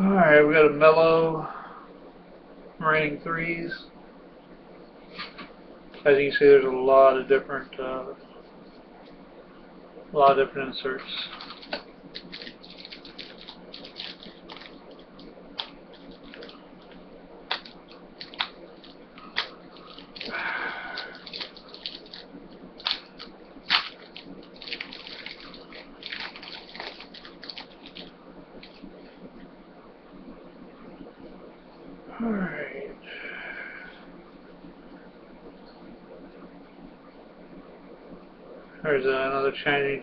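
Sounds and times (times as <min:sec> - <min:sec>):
cards rustling: 0:11.0 - 0:16.6, 0:17.5 - 0:28.8
card snapping: 0:23.7 - 0:24.0.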